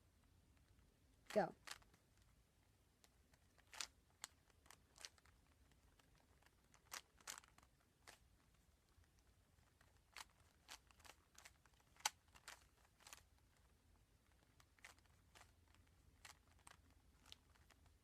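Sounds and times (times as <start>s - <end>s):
speed cube clicking: 3.6s - 8.2s, 9.0s - 17.9s.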